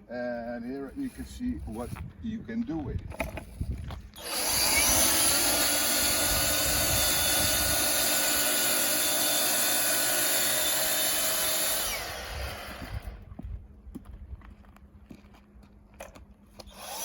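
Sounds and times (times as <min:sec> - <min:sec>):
electric motor whine: 0:04.1 - 0:13.3, 0:16.6 - 0:17.0.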